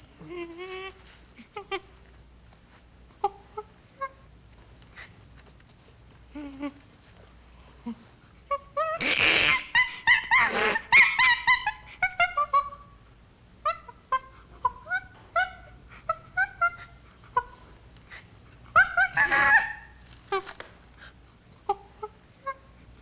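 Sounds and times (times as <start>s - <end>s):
chimpanzee whimpering: 0.1s - 2.0s, 3.2s - 4.3s, 6.3s - 6.9s, 7.7s - 13.0s, 13.6s - 22.8s
chimpanzee screaming: 8.6s - 12.8s, 18.7s - 20.5s.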